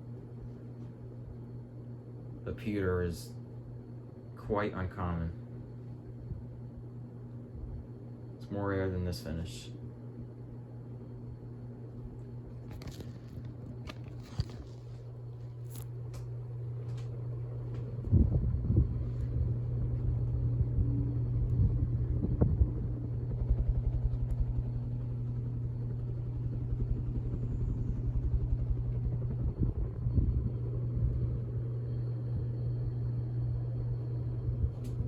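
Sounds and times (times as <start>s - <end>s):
ceiling fan motor hum: 0.0s - 35.0s
air buffeting microphone: 17.6s - 24.6s, 26.8s - 31.4s.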